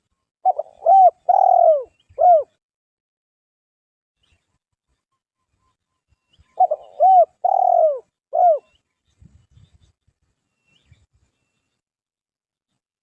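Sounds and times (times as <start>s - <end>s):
dove cooing: 0.4s - 2.6s, 6.6s - 8.7s.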